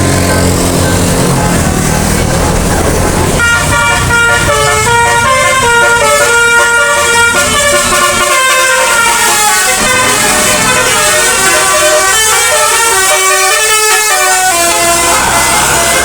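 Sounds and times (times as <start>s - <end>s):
low rumble: 0.2s - 3.4s
bus musical air horn melody: 2.6s - 16.0s.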